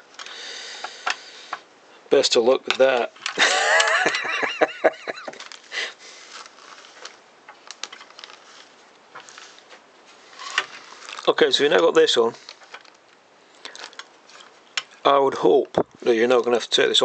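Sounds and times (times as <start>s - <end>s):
small parts clicking: 12.5s - 15.0s.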